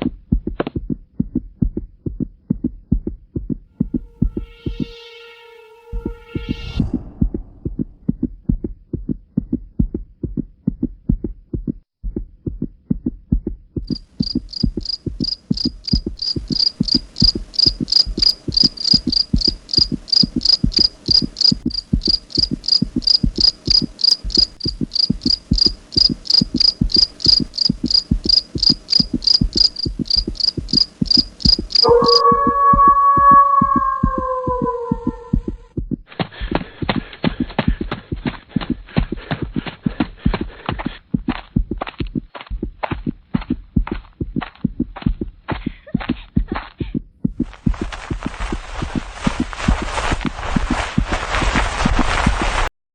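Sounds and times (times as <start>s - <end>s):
rhythmic low thumping: 0.0s - 5.0s, 5.9s - 52.1s
high insect-like chirping: 13.9s - 35.4s.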